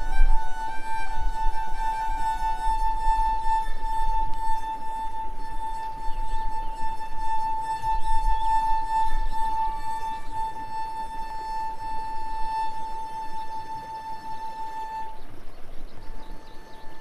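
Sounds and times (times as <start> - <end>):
faint bird chirps: 12.7 - 17.0.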